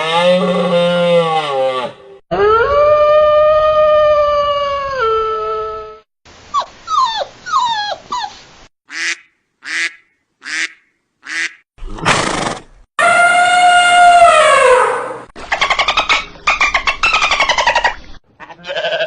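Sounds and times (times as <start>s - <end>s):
dog howling: 0.8s - 6.0s, 13.0s - 15.0s
dog whimpering yelps: 6.5s - 8.4s.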